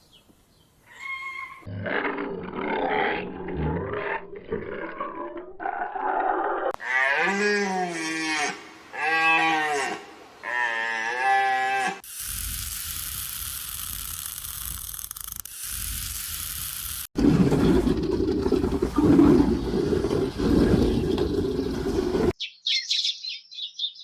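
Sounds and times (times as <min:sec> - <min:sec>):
cow mooing: 0:06.8 - 0:12.0.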